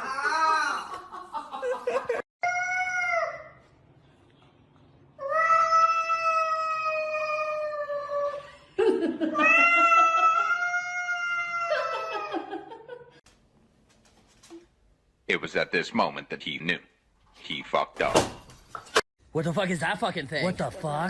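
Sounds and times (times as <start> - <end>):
cat yowling: 9.4 - 12.4.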